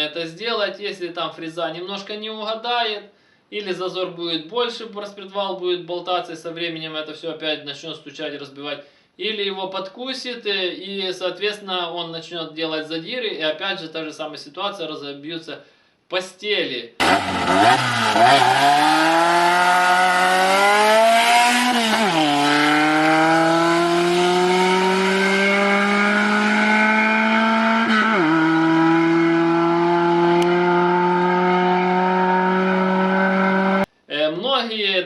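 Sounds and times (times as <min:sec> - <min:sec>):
car engine accelerating: 0:17.0 - 0:33.9.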